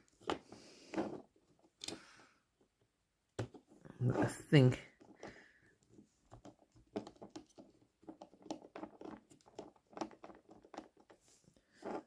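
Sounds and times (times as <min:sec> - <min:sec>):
scratching and rubbing: 0:00.3 - 0:01.7, 0:03.5 - 0:12.0
small handling clicks: 0:01.7 - 0:02.0.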